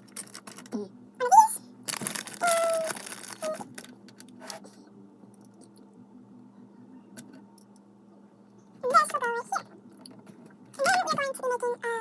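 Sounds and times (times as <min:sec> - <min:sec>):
plastic bricks rattling and clicking: 0:01.9 - 0:03.9.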